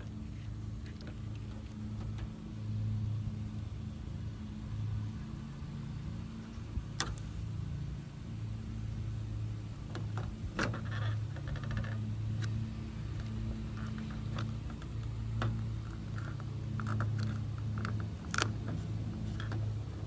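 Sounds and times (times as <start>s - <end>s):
low motor hum: 0.0s - 20.0s
crackling rustle: 9.6s - 20.0s.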